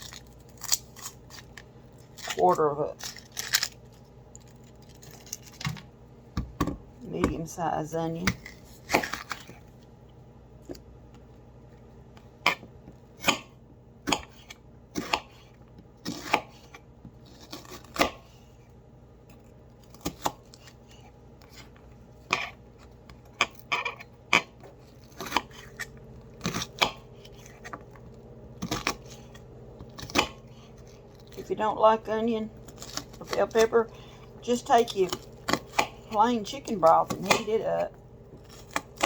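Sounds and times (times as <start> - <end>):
knife chopping onion on board: 13.2 - 15.4, 16.0 - 16.8, 17.4 - 18.3, 36.8 - 37.6.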